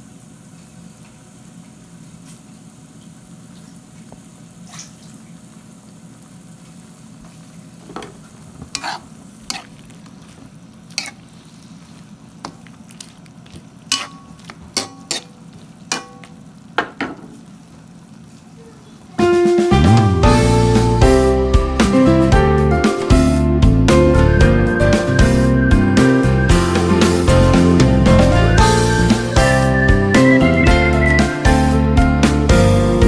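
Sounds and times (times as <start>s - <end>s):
food sizzling in a pan: 0.0s - 21.0s
metal utensil scraping a pan: 8.7s - 9.7s, 10.9s - 11.3s, 13.9s - 16.3s
music: 19.2s - 33.0s.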